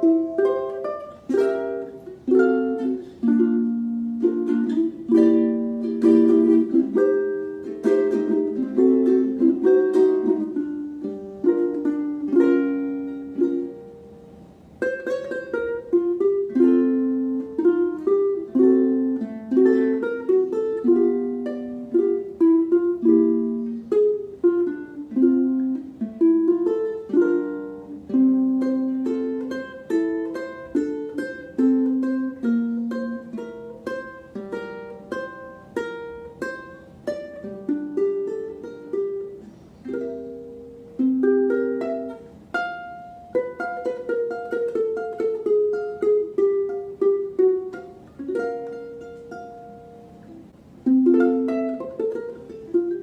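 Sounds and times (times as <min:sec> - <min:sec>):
ukulele played fingerstyle: 0:00.0 - 0:53.0.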